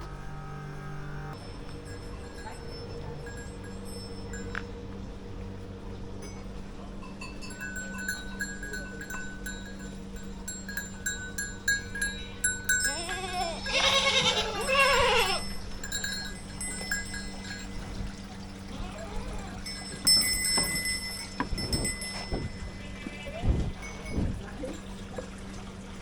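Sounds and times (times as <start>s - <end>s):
livestock bells tinkling: 1.4s - 25.3s
animals bleating: 12.7s - 15.6s, 18.7s - 19.6s, 22.7s - 23.6s.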